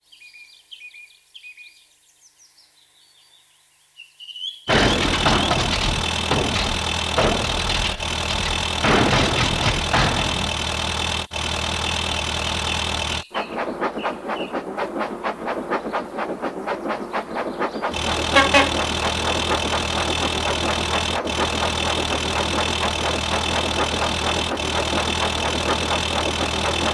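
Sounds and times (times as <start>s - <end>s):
steam locomotive chuffing: 4.7s - 26.9s
faint birdsong: 13.1s - 18.8s.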